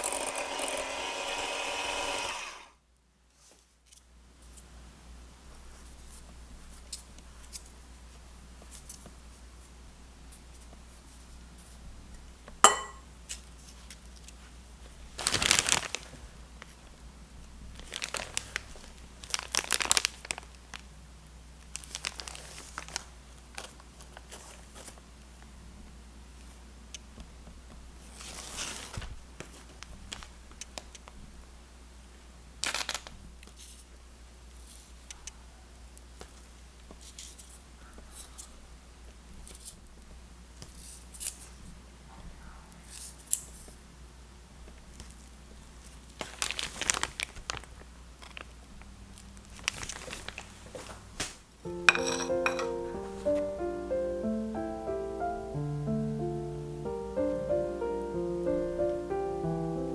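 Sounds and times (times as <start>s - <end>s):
sharp clink: 12.7s - 13.0s
crinkling and rustling: 13.3s - 20.9s, 21.6s - 25.1s, 27.4s - 31.3s, 32.6s - 35.2s, 44.6s - 53.6s.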